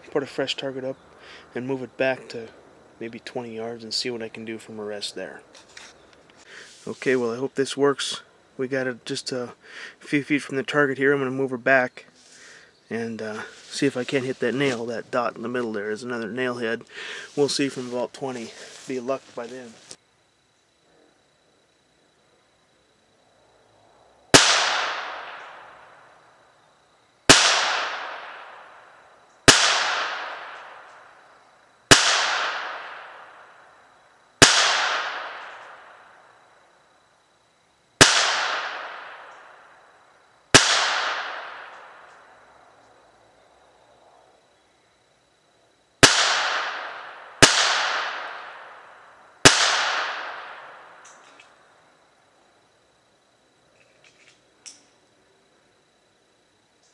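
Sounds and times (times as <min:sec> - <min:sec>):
pistol shots: 0:24.3 - 0:25.7, 0:27.3 - 0:28.6, 0:29.5 - 0:30.9, 0:31.9 - 0:33.3, 0:34.4 - 0:35.8, 0:38.0 - 0:39.4, 0:40.5 - 0:41.8, 0:46.0 - 0:48.8, 0:49.4 - 0:50.8.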